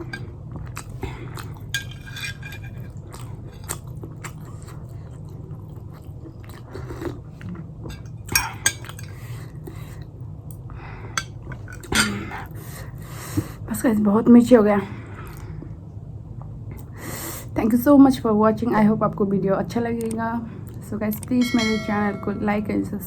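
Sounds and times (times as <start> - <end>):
chewing and crunching: 0.0 - 10.1
steady low hum: 0.0 - 23.0
dish or cutlery clinks: 21.4 - 22.6.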